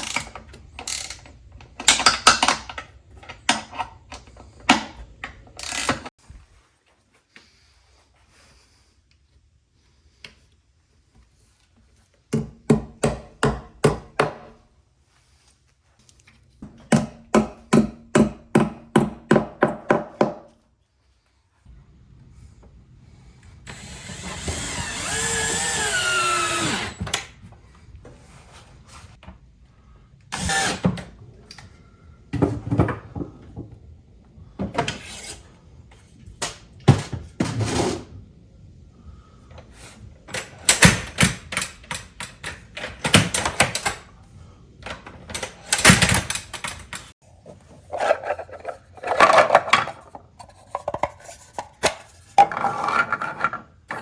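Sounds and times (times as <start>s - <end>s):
power drill drilling wood: 23.7s - 27.2s, 30.4s - 30.9s.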